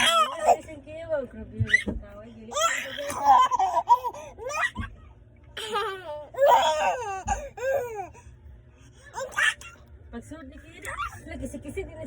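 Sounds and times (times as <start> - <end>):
baby laughing: 2.5 - 4.9, 5.6 - 8.2, 9.2 - 9.8.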